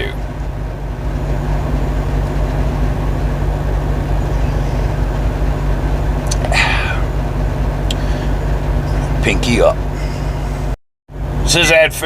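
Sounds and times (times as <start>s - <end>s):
truck engine idling: 0.0s - 12.0s.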